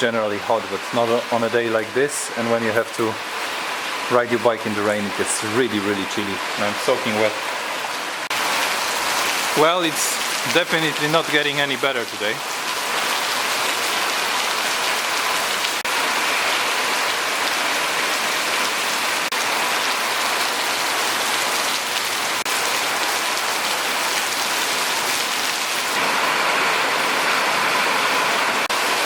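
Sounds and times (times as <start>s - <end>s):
heavy rain pouring: 0.0s - 29.0s.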